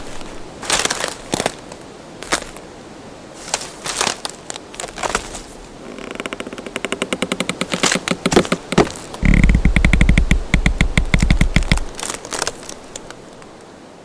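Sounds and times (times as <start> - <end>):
dry wood cracking: 0.0 - 1.6, 3.4 - 13.5
wooden creak: 5.0 - 13.1
rapid clicks: 6.3 - 13.0.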